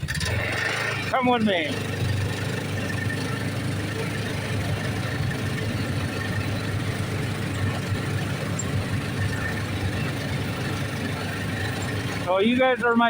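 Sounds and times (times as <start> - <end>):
vehicle engine droning: 0.0 - 13.0.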